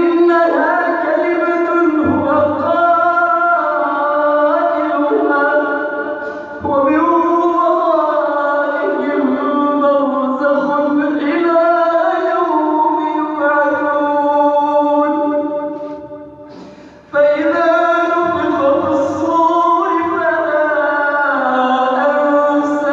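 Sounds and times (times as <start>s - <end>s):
man chanting melodically: 17.1s - 22.9s.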